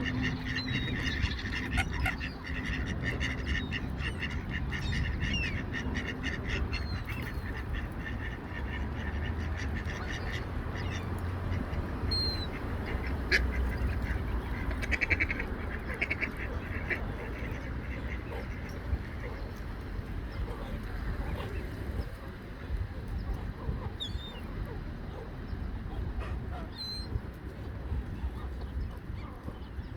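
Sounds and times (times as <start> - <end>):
ducks quacking: 0.0 - 19.7.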